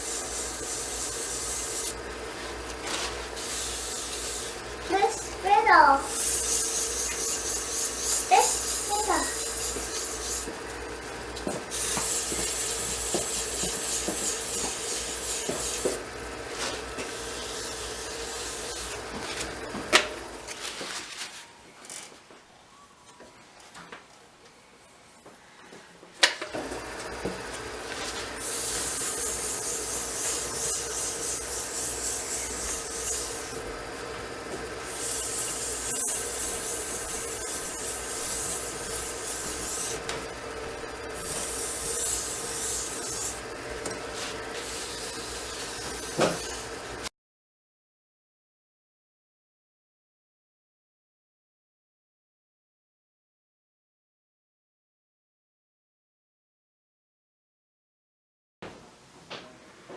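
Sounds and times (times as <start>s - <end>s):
wood lathe humming: 0.0s - 5.4s, 26.6s - 47.0s
rubbing hiss: 34.9s - 40.0s, 41.2s - 43.4s.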